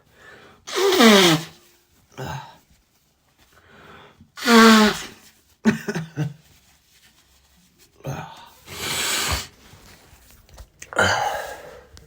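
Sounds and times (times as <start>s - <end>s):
short breaths: 0.0s - 1.6s, 3.5s - 5.2s, 8.3s - 9.8s, 11.0s - 12.0s
person sneezing: 0.7s - 1.6s, 4.4s - 6.3s, 8.1s - 9.6s, 10.9s - 11.8s.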